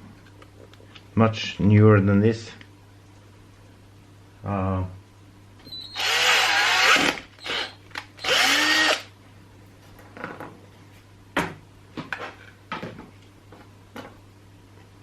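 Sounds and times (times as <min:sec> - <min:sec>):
power drill whining: 0:05.7 - 0:09.1.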